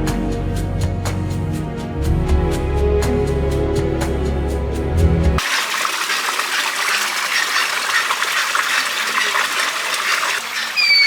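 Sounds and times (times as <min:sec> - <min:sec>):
rushing water: 0:05.4 - 0:11.0
bird whistle: 0:10.6 - 0:11.0.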